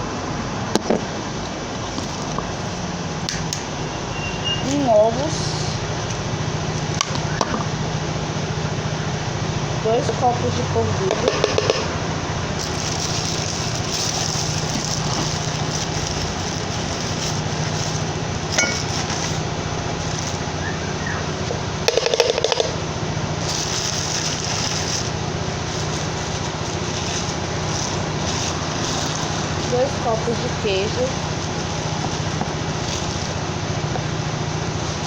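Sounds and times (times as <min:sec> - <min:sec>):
steady background hum: 0:00.0 - 0:35.0
cup clinking against blender jar: 0:18.6 - 0:18.9.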